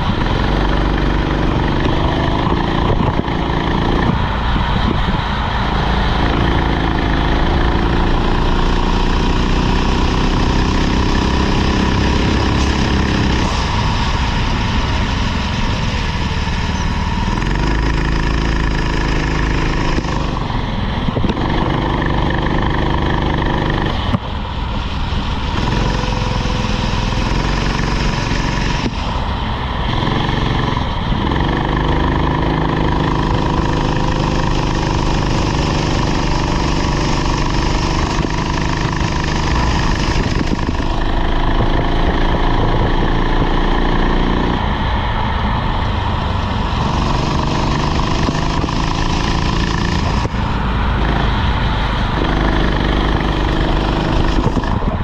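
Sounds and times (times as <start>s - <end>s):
kart engine revving: 0.0s - 55.0s.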